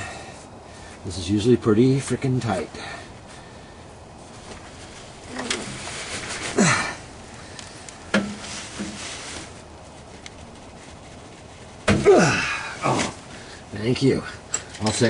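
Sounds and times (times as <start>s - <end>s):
man straining grunts and breaths: 5.3s - 7.6s, 11.9s - 13.7s.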